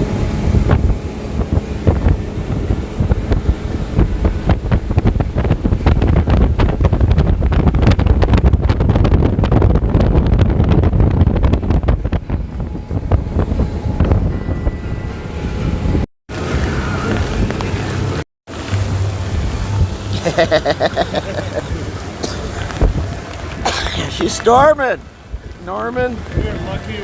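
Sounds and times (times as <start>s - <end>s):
wind buffeting microphone: 0.0s - 27.0s
rain pattering: 16.3s - 27.0s.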